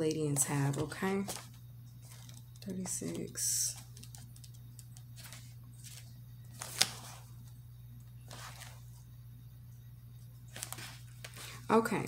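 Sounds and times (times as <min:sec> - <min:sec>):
low electrical hum: 0:00.0 - 0:12.0
paper and cards rustling: 0:00.1 - 0:07.6, 0:08.2 - 0:09.0, 0:10.4 - 0:11.8.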